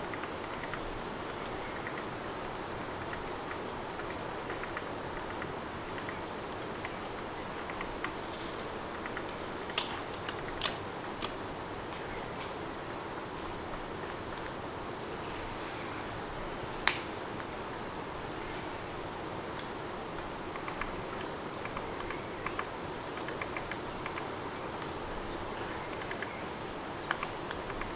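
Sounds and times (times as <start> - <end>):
steady rain: 0.0 - 27.9
birds chirping: 5.8 - 13.3.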